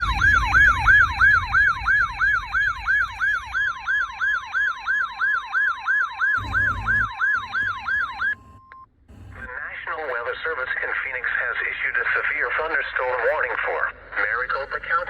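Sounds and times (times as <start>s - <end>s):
steady tone: 0.0s - 4.8s, 6.4s - 9.5s
yelp siren: 0.0s - 9.5s.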